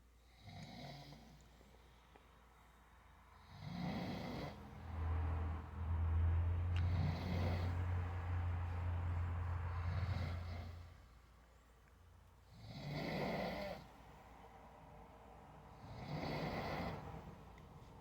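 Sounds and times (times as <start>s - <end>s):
man snoring: 3.4s - 4.6s, 6.8s - 8.0s, 12.6s - 13.9s, 15.9s - 17.2s.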